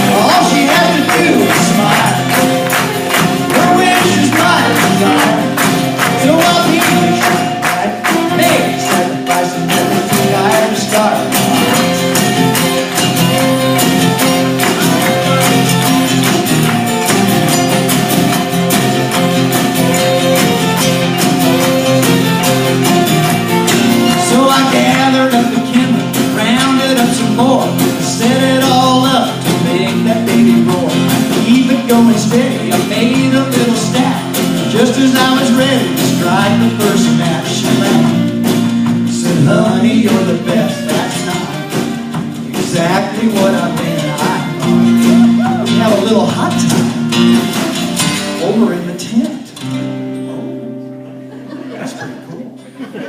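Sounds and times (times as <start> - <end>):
man singing: 0.0 - 12.7, 24.0 - 47.0
percussion hits: 0.0 - 48.8
live country band playing: 0.0 - 53.0
strummed guitar: 0.0 - 53.0.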